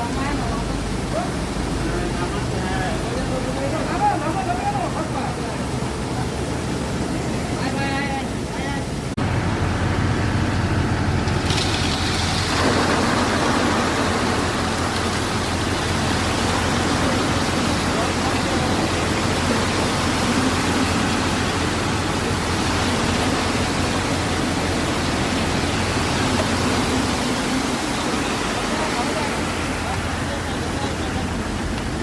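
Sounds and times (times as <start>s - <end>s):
mixer drum turning and concrete pouring: 0.0s - 32.0s
truck engine humming: 9.2s - 32.0s.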